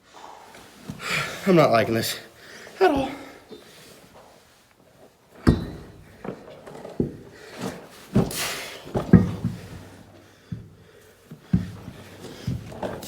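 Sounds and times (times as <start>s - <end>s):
heavy wheel knocks and clunks: 5.4s - 13.0s.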